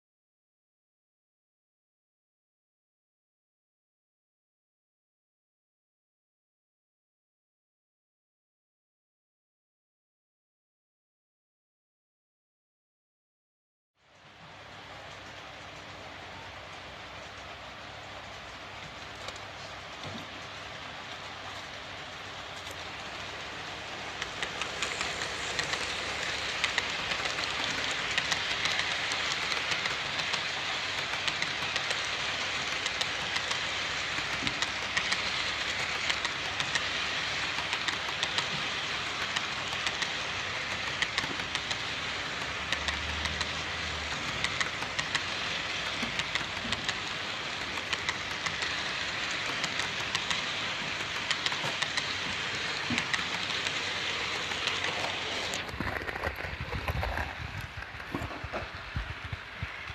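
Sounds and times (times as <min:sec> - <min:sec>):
freight train rumbling: 0:14.2 - 0:59.9
wheel clicks over rail joints: 0:16.7 - 0:59.9.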